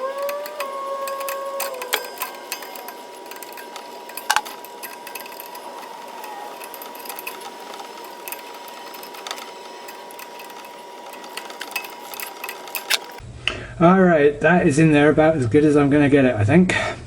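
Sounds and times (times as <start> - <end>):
hands working wire clicking: 0.0 - 13.2
steady high-pitched hum: 0.0 - 13.2.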